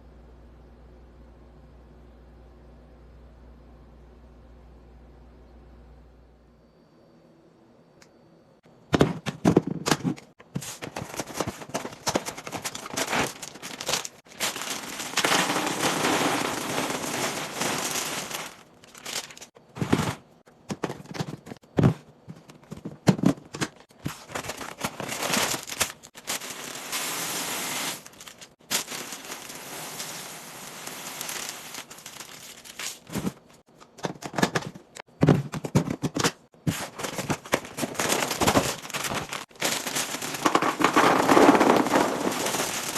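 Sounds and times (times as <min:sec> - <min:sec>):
plastic packaging crinkling: 0:10.6 - 0:20.2, 0:23.9 - 0:33.6, 0:36.7 - 0:42.9.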